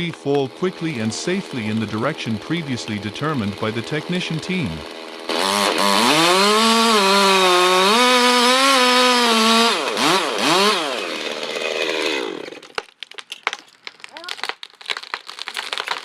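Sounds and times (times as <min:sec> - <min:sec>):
chainsaw cutting at full throttle: 0:00.0 - 0:12.7
sharp cracks: 0:11.8 - 0:16.0.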